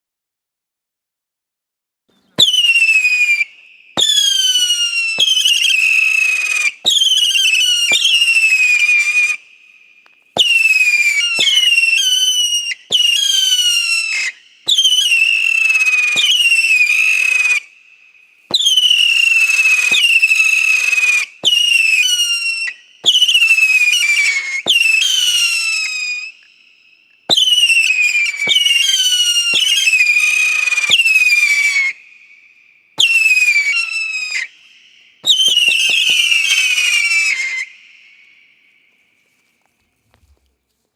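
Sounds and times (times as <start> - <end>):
firework whistles sliding down: 2.3 - 39.7
firework launch pops: 2.4 - 9.4, 10.0 - 17.6, 18.4 - 26.2, 27.3 - 31.9, 35.2 - 37.7.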